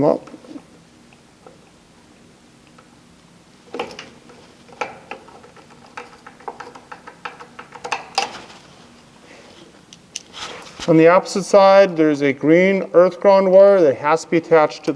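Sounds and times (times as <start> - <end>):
metallic clicks and knocks: 3.7 - 8.6.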